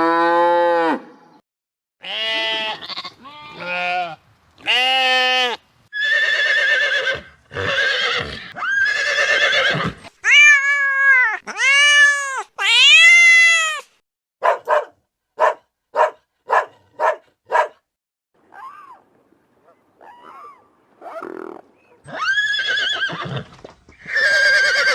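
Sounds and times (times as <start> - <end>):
drawn-out animal cries: 4.7 - 13.7, 20.0 - 24.9.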